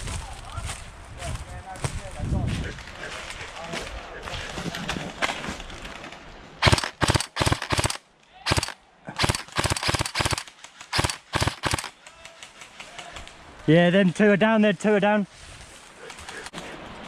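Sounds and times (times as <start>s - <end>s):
airsoft guns firing bursts: 6.6s - 12.0s.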